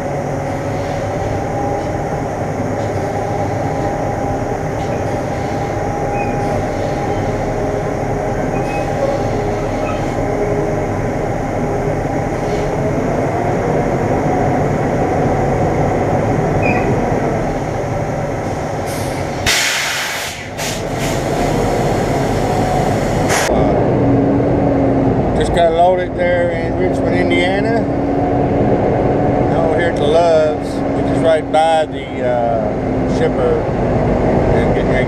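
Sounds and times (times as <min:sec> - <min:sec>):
faint whine: 0:00.0 - 0:19.5
truck engine rumbling: 0:00.0 - 0:35.0
air hiss: 0:18.8 - 0:23.5.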